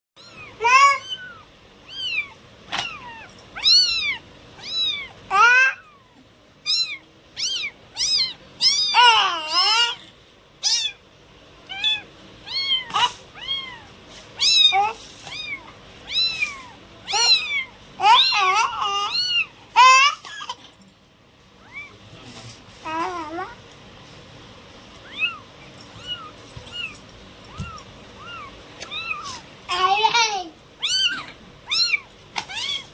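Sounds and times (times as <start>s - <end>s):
kittens meowing: 0.2s - 11.0s, 11.6s - 20.5s, 21.6s - 22.1s, 25.0s - 32.9s.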